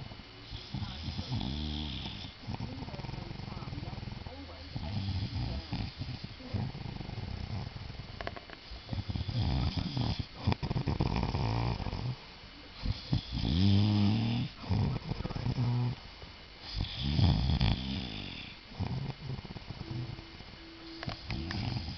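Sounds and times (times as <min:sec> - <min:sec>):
man snoring loudly: 0:00.6 - 0:02.4, 0:08.9 - 0:12.1, 0:13.1 - 0:16.0, 0:16.8 - 0:19.9, 0:21.3 - 0:21.9.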